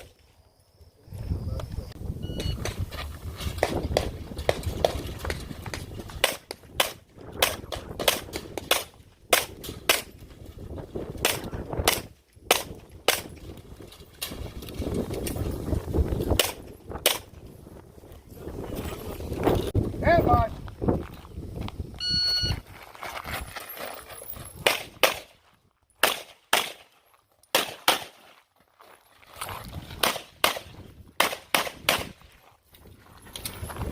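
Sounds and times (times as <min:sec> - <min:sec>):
pistol shots: 0:16.3 - 0:17.3, 0:24.6 - 0:25.4, 0:26.0 - 0:26.9, 0:27.5 - 0:28.2, 0:30.0 - 0:32.2.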